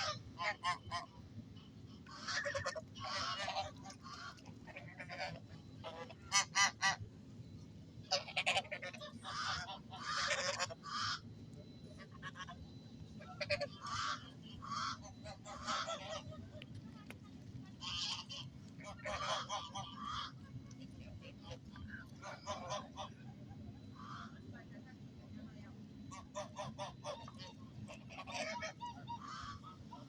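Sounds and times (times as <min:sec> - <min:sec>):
geese honking: 0:00.0 - 0:01.2, 0:02.0 - 0:07.0, 0:08.1 - 0:11.2, 0:13.2 - 0:16.4, 0:17.8 - 0:23.3, 0:24.0 - 0:24.4, 0:26.1 - 0:30.0.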